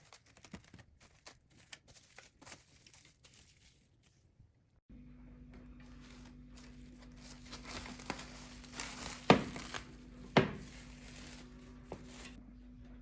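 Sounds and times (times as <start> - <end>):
rustling and crinkling handling: 0.0 - 4.6, 5.7 - 12.4
steady low hum: 4.7 - 13.0.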